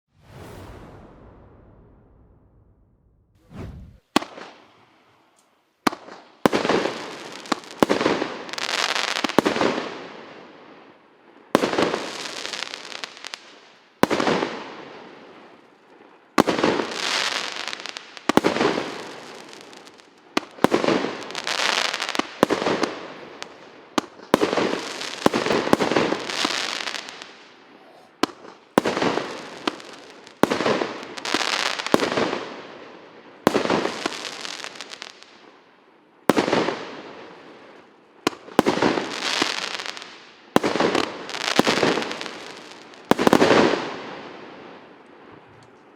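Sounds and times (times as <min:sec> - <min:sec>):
firework bangs: 0:00.1 - 0:04.8, 0:16.4 - 0:32.6, 0:33.4 - 0:35.3, 0:38.3 - 0:44.2
firework crackling: 0:00.1 - 0:04.8, 0:16.4 - 0:32.6, 0:33.4 - 0:35.4, 0:38.3 - 0:44.1.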